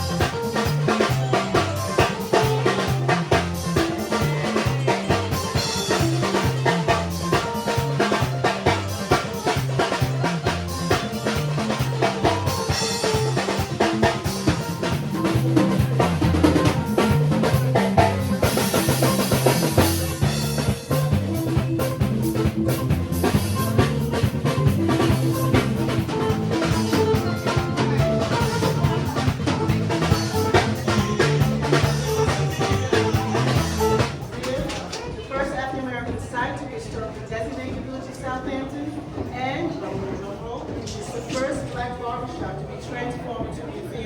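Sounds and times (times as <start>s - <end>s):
stepping bass line: 0.0s - 34.2s
drum kit with rimshots: 0.0s - 35.1s.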